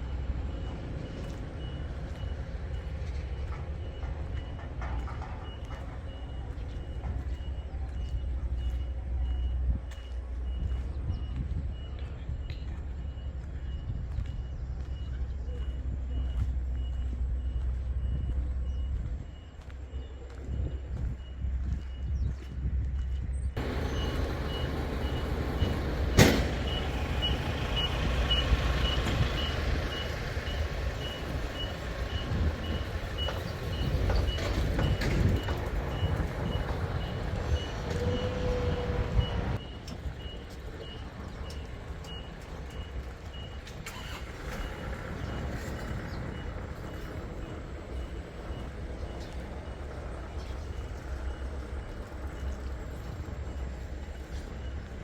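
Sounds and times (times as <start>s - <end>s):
combine harvester engine running: 0.0s - 21.9s, 23.6s - 55.0s
high electronic warning beeps: 0.0s - 55.0s.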